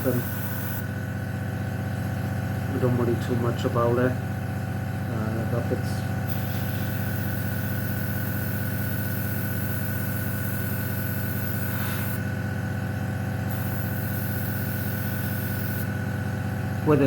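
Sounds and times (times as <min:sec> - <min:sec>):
airbrush hissing: 0:00.0 - 0:01.0, 0:06.3 - 0:12.3, 0:13.4 - 0:15.9
compressor humming: 0:00.0 - 0:17.0.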